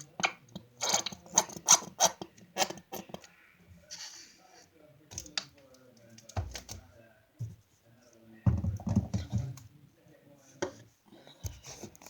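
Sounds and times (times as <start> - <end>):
clicks and scratching from handling: 5.1 - 6.9.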